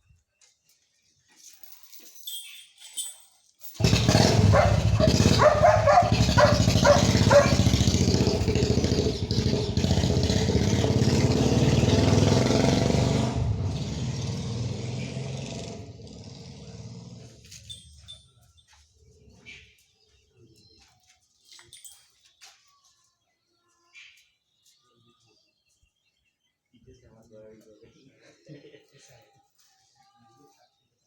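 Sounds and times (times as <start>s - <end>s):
vehicle engine running loudly: 3.8s - 17.3s.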